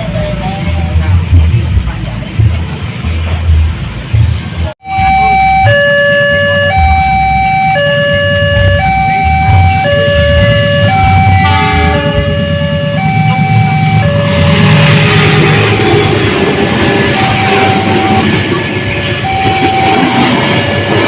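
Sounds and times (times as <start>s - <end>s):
brief pitched electronic tone: 4.8s - 15.8s, 17.0s - 18.5s
electronic two-tone warning signal: 4.8s - 21.0s.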